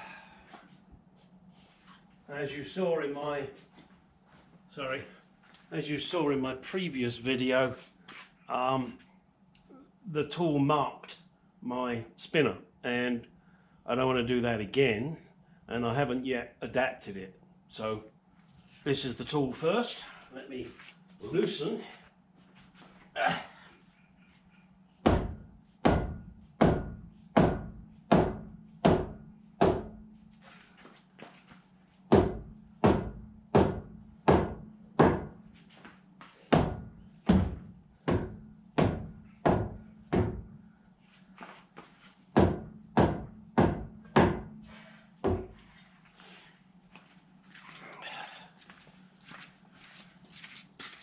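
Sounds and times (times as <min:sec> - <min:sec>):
rubber hammer thuds on metal: 0:25.1 - 0:30.1, 0:32.1 - 0:35.4, 0:36.5 - 0:40.6, 0:42.4 - 0:45.6.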